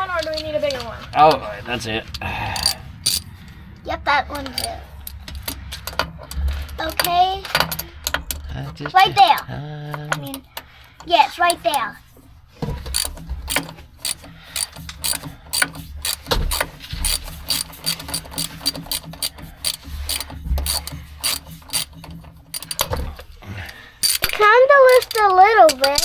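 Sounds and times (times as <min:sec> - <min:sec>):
socket ratchet clicking: 0:02.6 - 0:03.4, 0:10.1 - 0:12.0, 0:12.8 - 0:23.4, 0:24.0 - 0:26.0.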